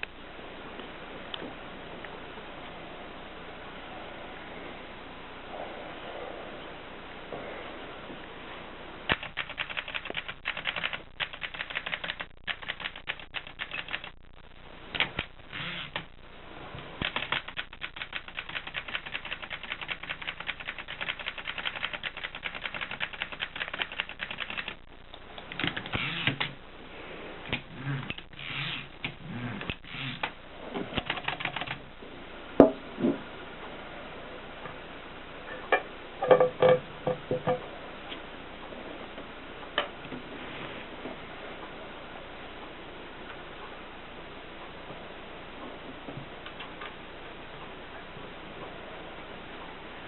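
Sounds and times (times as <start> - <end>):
heavy typewriter mechanical noises: 9.1 - 14.1, 17.0 - 24.8, 25.5 - 26.6, 27.5 - 31.8
typewriter keys clacking: 9.1 - 14.1, 17.0 - 24.8, 31.0 - 31.8.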